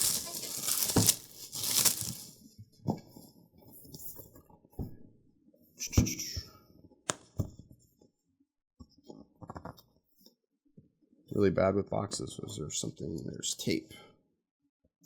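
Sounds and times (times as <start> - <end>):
cardboard box handled: 0.0 - 2.3.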